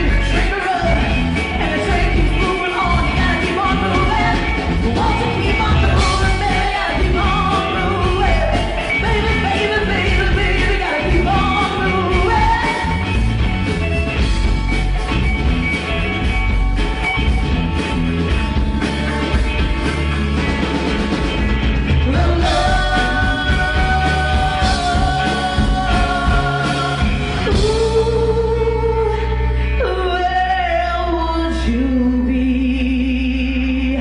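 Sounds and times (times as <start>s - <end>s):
rock band with singing: 0.0s - 34.0s.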